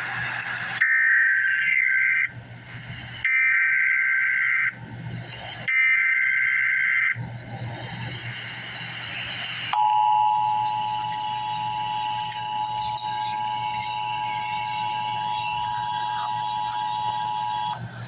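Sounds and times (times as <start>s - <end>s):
digital data burst screeching: 0.0s - 18.0s
two-tone attention signal: 9.7s - 17.8s.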